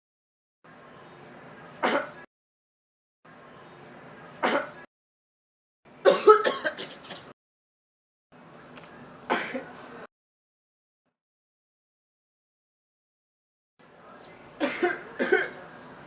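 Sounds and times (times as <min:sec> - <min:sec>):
person coughing: 0:06.1 - 0:07.0, 0:14.6 - 0:15.6.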